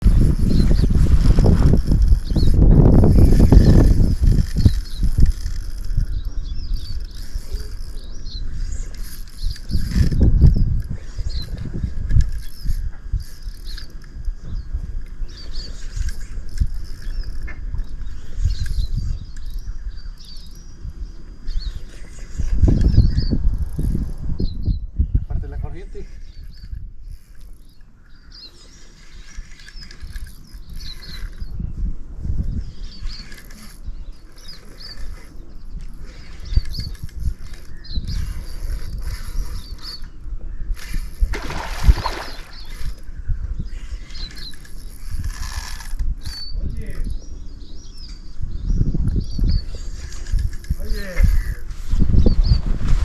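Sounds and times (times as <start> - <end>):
small birds chirping: 0.0 - 53.0
wind rumbling on microphone: 0.0 - 53.0
water splash: 41.3 - 42.6.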